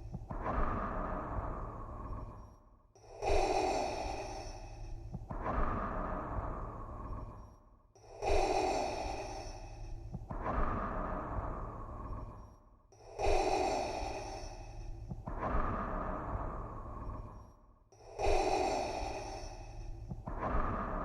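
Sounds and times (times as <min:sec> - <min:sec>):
hissing respirator breathing: 0:13.0 - 0:15.0, 0:18.1 - 0:20.1.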